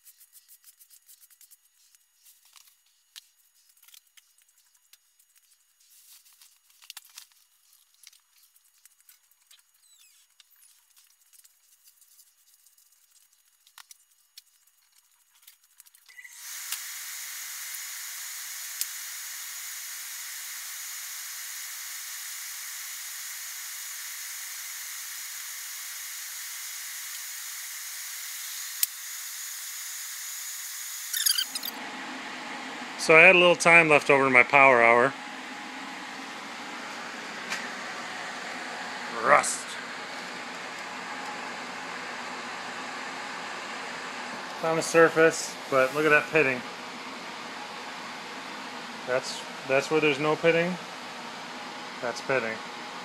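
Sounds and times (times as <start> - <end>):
steady even hiss: 44.6 - 46.6.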